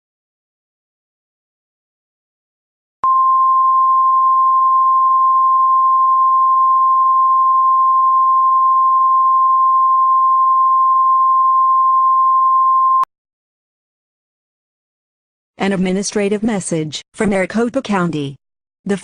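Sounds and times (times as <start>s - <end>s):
steady single-pitched beep: 3.0s - 13.1s.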